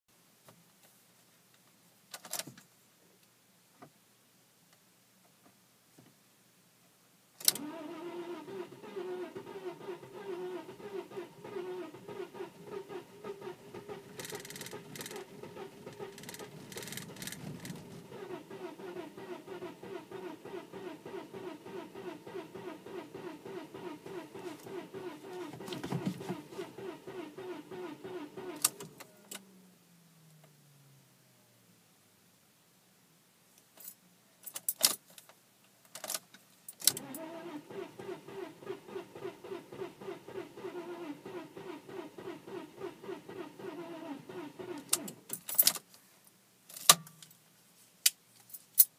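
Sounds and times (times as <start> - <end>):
car engine cranking: 7.5 - 29.5, 36.8 - 45.7.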